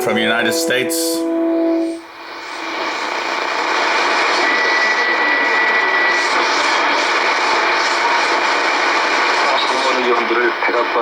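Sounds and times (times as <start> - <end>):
thin steady whistle: 0.0 - 7.7
radio static hiss: 0.0 - 11.0.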